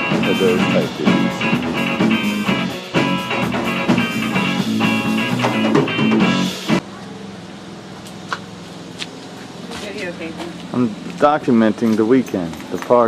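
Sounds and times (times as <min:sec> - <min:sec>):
electric guitar: 0:00.0 - 0:06.8
live rock band playing: 0:00.0 - 0:06.8.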